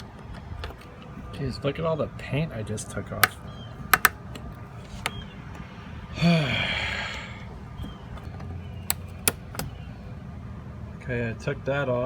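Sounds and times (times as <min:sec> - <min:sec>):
man sighing: 0:06.1 - 0:07.5.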